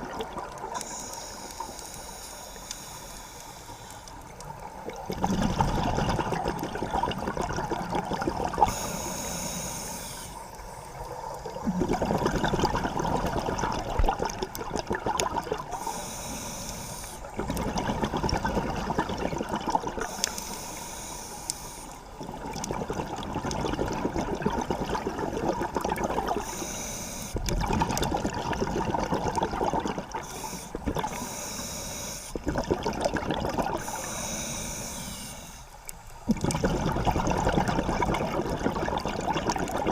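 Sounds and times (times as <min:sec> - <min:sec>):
exhaled bubbles rushing: 0:00.0 - 0:00.8, 0:04.6 - 0:08.8, 0:11.4 - 0:15.8, 0:17.3 - 0:20.1, 0:22.2 - 0:26.5, 0:27.4 - 0:31.2, 0:32.4 - 0:34.0, 0:36.2 - 0:39.9
regulator inhale hiss: 0:00.7 - 0:04.3, 0:08.6 - 0:11.2, 0:15.6 - 0:17.4, 0:20.0 - 0:22.2, 0:26.3 - 0:27.5, 0:30.1 - 0:32.4, 0:33.8 - 0:36.0.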